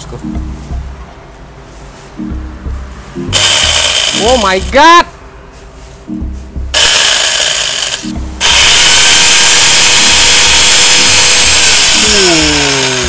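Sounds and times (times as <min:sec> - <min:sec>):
angle grinder chainsaw running: 0:03.3 - 0:04.9, 0:06.8 - 0:13.0.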